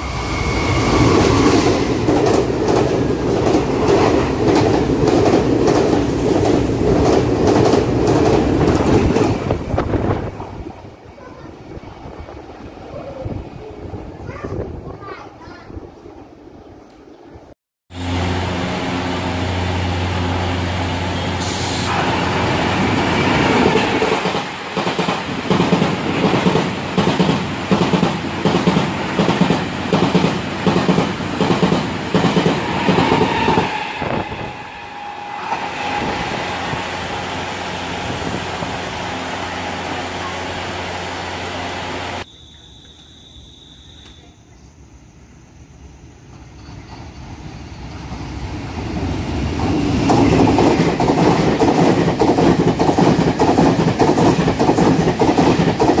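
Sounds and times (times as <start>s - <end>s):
train wheels clattering over rail joints: 49.6s - 56.0s.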